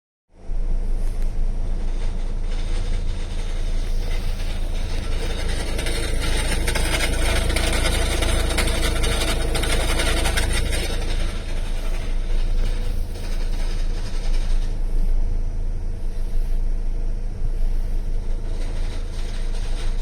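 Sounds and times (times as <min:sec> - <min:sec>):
rotary engine idling: 0:00.7 - 0:20.0
fast fine ticking: 0:01.3 - 0:14.7.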